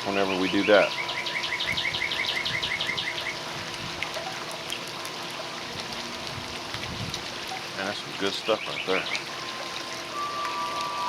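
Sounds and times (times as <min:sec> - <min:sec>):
outdoor background hiss: 0:00.0 - 0:11.0
songbird chirping fast: 0:00.3 - 0:03.4.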